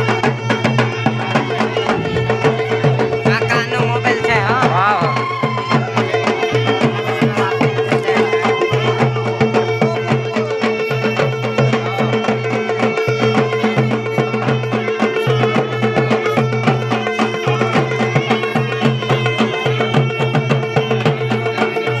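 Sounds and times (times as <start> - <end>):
quick drum beat: 0.0 - 14.8
folk music: 0.0 - 22.0
held drone: 0.4 - 3.4.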